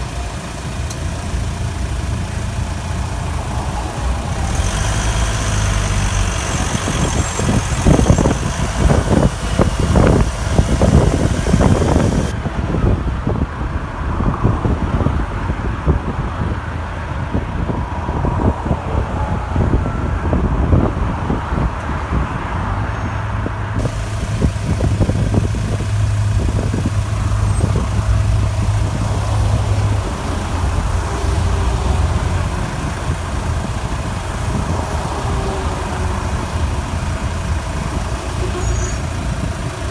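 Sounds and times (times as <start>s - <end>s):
engine squeak: 0.0s - 12.4s, 22.9s - 39.9s
diesel engine idling: 0.0s - 14.9s, 23.6s - 39.9s.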